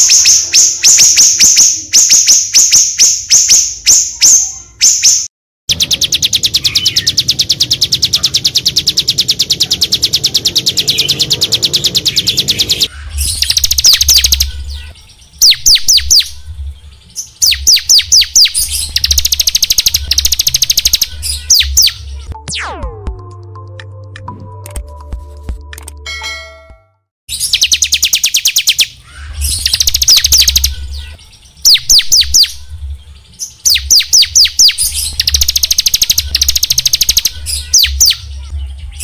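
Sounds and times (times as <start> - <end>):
songbird singing high notes: 0.0 - 22.3, 27.3 - 39.0.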